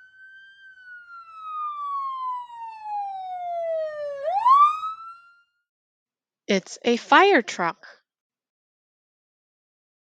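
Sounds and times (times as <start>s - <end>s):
fire truck siren wailing: 0.0s - 5.6s.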